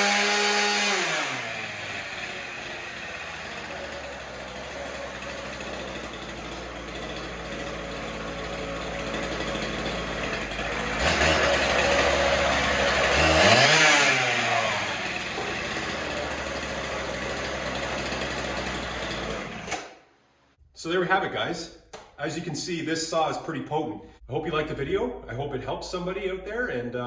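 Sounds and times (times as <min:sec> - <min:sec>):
power cutter engine revving: 0:00.0 - 0:20.0.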